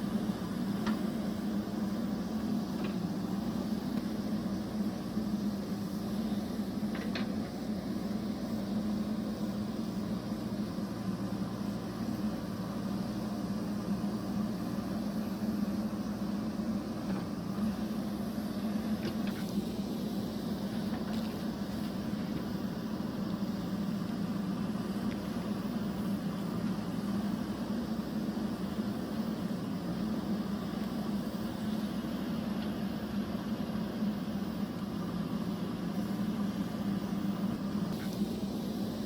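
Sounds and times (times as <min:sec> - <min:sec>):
low mechanical hum: 0:00.0 - 0:39.0.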